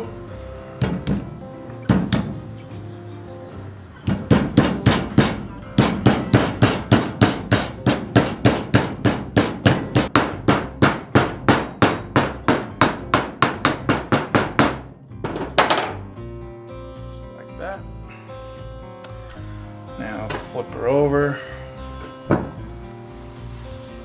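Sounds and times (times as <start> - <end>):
hammer tapping metal seal: 0.8 - 2.8, 4.0 - 16.0, 22.0 - 22.7.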